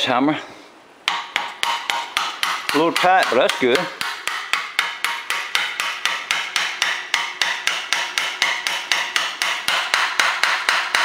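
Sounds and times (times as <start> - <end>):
hammer tapping on metal: 1.0 - 11.0.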